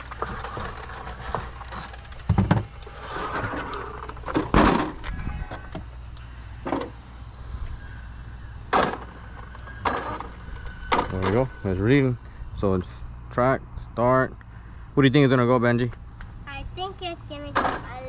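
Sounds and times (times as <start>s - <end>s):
thumps and clattering knocks: 0.0s - 5.9s, 6.6s - 7.0s, 8.7s - 11.4s.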